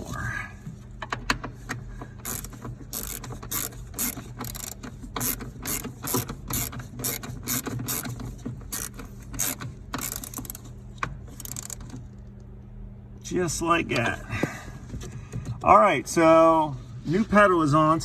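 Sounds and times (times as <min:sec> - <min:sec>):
ratchet wrench clicking: 0:02.2 - 0:10.7, 0:11.3 - 0:11.9.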